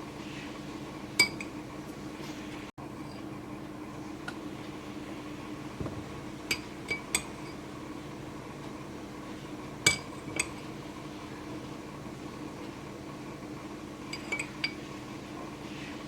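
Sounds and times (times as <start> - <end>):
steady low hum: 0.0 - 16.0
spoon clinking against a dish: 1.2 - 1.6, 6.5 - 7.6, 9.8 - 10.6, 14.1 - 14.8.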